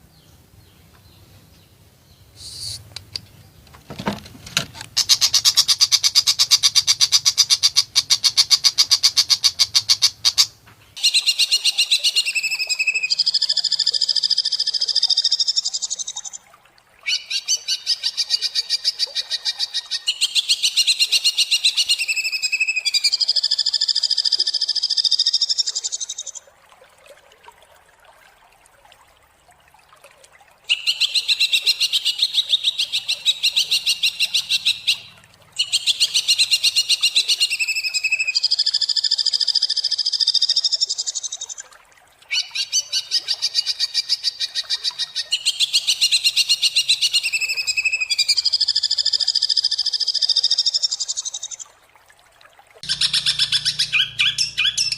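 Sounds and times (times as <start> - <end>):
bird singing harsh trills: 52.8 - 54.9.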